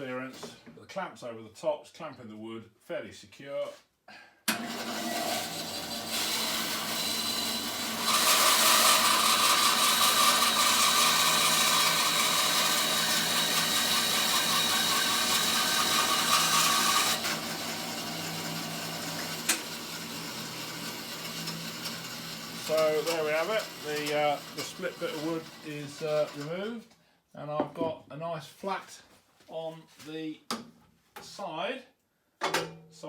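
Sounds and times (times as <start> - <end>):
bandsaw cutting through log: 4.5 - 26.7.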